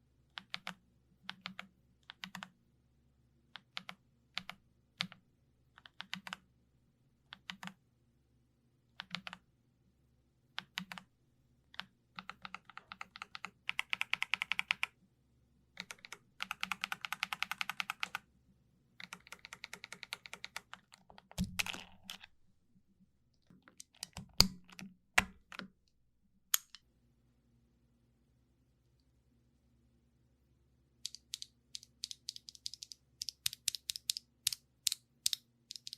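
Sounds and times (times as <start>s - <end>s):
mechanical keyboard typing: 0.3s - 2.5s, 3.6s - 5.2s, 5.8s - 6.4s, 7.3s - 7.8s, 9.0s - 9.4s, 10.6s - 11.1s, 11.7s - 15.0s, 15.8s - 18.2s, 19.0s - 22.3s, 23.7s - 25.7s, 31.0s - 35.9s.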